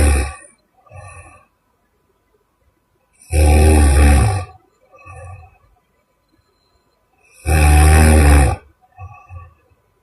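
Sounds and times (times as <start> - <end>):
woman snoring: 0.0 - 1.5, 3.2 - 5.5, 7.3 - 9.6.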